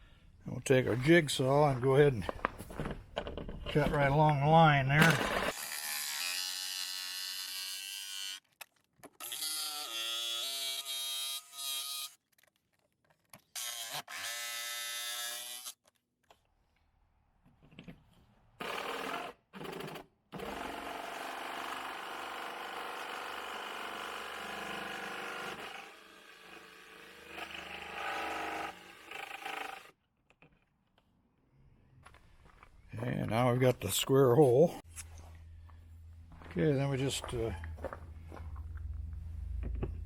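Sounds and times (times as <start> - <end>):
jigsaw cutting: 5.0 - 8.6, 13.5 - 15.8, 18.6 - 30.0.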